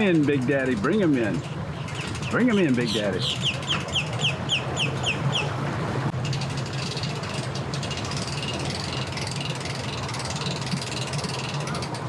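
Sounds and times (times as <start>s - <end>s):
boat motor running: 0.0s - 12.0s
bird chirping: 1.7s - 5.6s.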